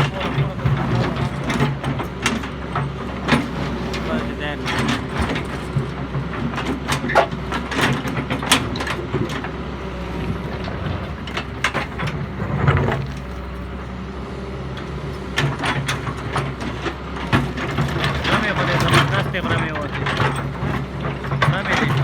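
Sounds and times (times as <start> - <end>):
excavator diesel engine running: 0.0 - 22.0
sharp metallic knocks and clanks: 15.3 - 22.0.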